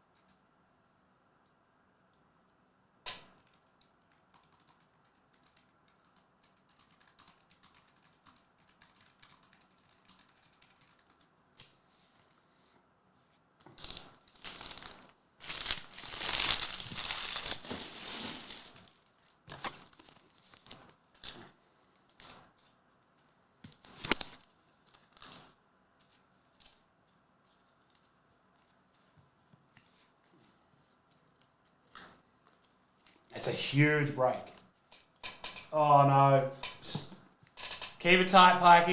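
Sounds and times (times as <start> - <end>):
sharp click: 3.1 - 3.3
plastic wrapping crinkling and tearing: 13.8 - 21.4.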